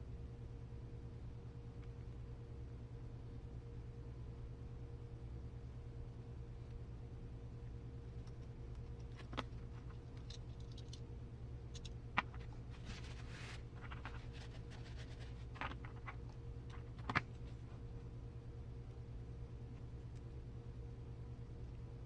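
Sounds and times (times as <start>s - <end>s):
low hum: 0.0s - 22.0s
scratchy rustles of parts: 9.0s - 11.0s, 11.7s - 17.8s.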